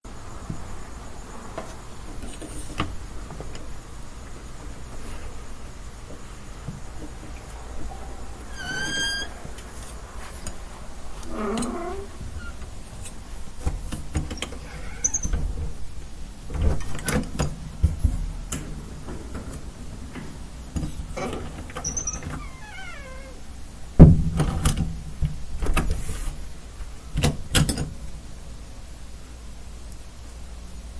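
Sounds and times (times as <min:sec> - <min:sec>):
door hinges creaking: 0:08.4 - 0:09.6, 0:11.2 - 0:12.7, 0:14.2 - 0:15.6, 0:21.2 - 0:23.4
door closing thud: 0:24.0 - 0:24.9.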